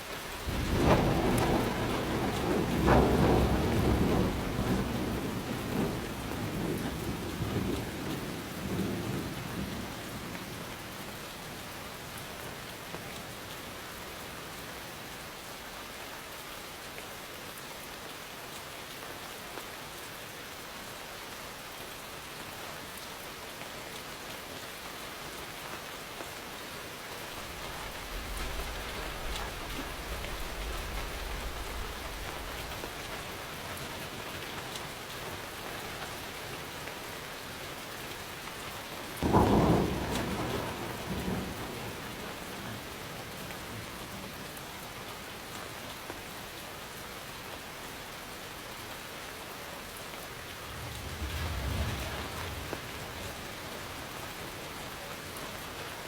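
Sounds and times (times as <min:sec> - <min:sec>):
steady rain falling: 0:00.0 - 0:56.0
thunder rumbling: 0:00.3 - 0:10.5, 0:27.3 - 0:36.6, 0:39.2 - 0:44.3, 0:50.2 - 0:55.0.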